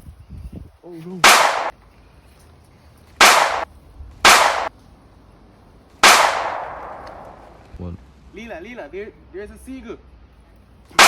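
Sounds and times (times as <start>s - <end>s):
gunshot bangs: 1.2s - 1.7s, 3.2s - 3.6s, 4.3s - 4.7s, 6.0s - 7.6s.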